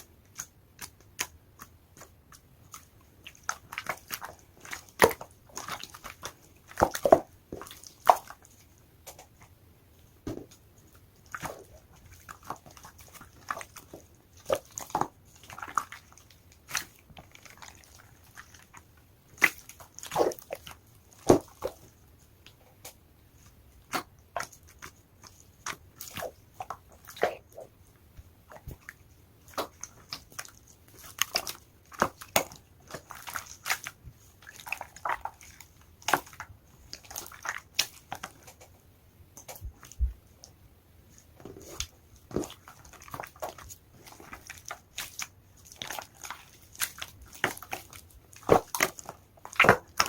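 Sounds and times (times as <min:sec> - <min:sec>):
slime squishing and popping: 0:41.5 - 0:50.0.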